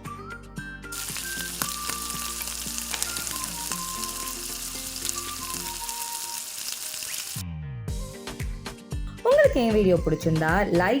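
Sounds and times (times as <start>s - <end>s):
soft background music: 0.0s - 11.0s
food deep-frying in hot oil: 0.9s - 7.4s.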